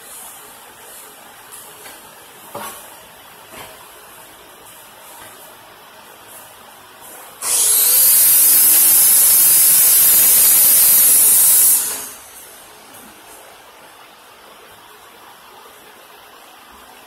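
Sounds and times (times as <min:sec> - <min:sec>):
welding arc hissing: 0:06.3 - 0:12.6.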